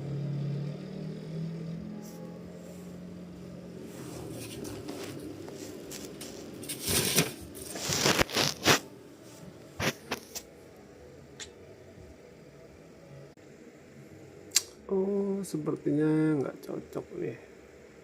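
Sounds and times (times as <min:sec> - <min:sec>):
hands scraping and rustling: 0:03.8 - 0:08.8, 0:09.8 - 0:10.5.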